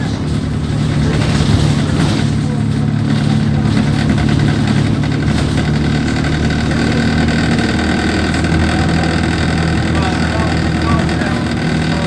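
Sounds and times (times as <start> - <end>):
bus diesel engine idling: 0.0 - 12.0.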